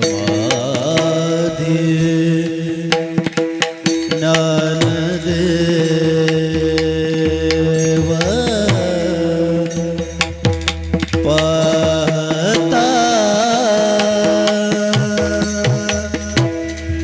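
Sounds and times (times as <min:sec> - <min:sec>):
rhythmic drum strokes: 0:00.0 - 0:17.0.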